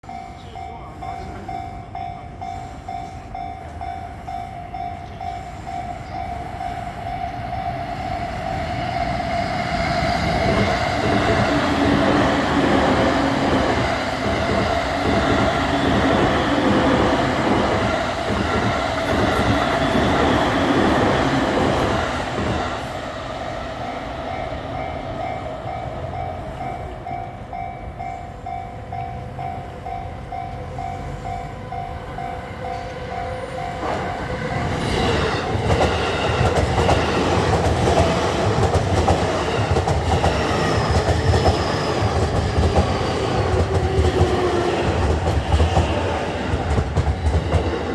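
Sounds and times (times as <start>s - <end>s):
level-crossing warning bell: 0.0s - 23.1s, 23.7s - 47.9s
train wheels clattering over rails: 9.6s - 23.0s, 33.0s - 47.9s.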